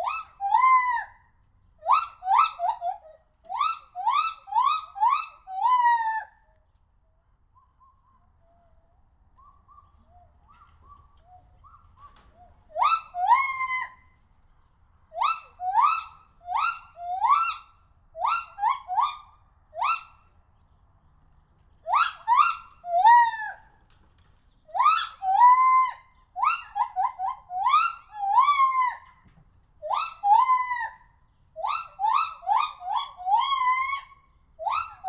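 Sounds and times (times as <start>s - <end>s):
monkey whistle-like calls: 12.8s - 14.0s, 15.2s - 17.6s, 18.2s - 20.1s, 21.9s - 23.5s, 24.8s - 29.0s, 31.6s - 35.0s.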